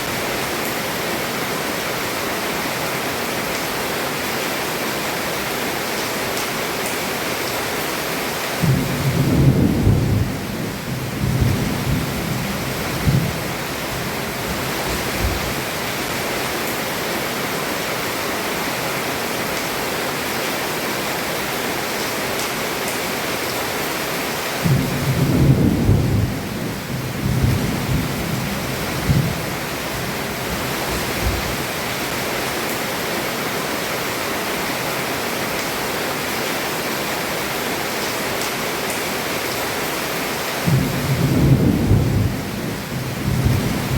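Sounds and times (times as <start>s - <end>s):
heavy rain on a roof: 0.0s - 43.9s
thunder rumbling: 8.6s - 15.6s, 24.6s - 31.8s, 40.6s - 43.9s.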